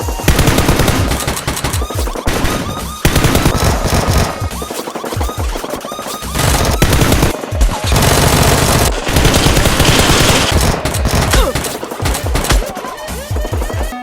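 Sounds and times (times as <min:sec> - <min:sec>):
background music: 0:00.0 - 0:14.0
automatic gunfire: 0:00.2 - 0:04.4, 0:06.4 - 0:12.7.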